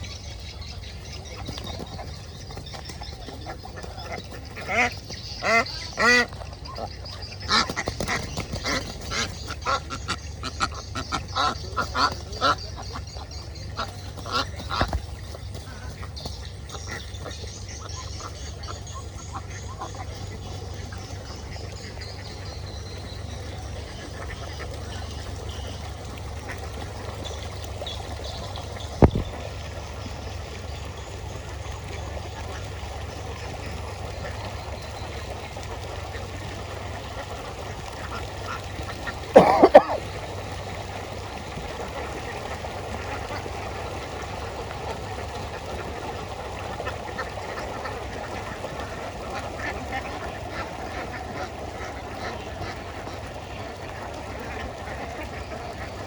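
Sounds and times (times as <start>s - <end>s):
ducks quacking: 0.0s - 56.0s.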